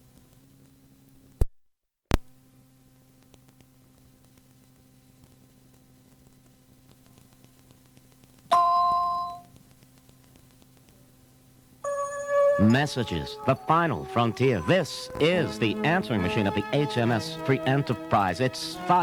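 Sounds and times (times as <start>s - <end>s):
tape hum and hiss: 0.0s - 1.5s, 2.1s - 19.0s
two-tone electronic chime: 11.8s - 15.0s.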